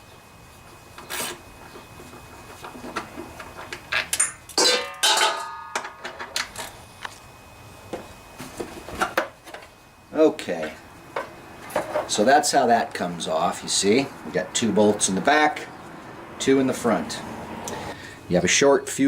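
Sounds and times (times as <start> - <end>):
hand tools and metal parts clinking: 2.6 - 6.8, 10.6 - 12.2.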